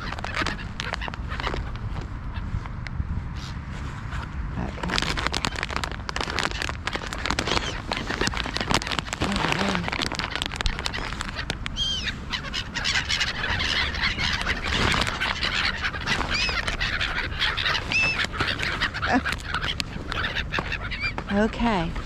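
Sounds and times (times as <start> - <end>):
ducks and birds calling: 0.0 - 2.7, 3.4 - 22.0
high arching bird calls: 6.5 - 22.0.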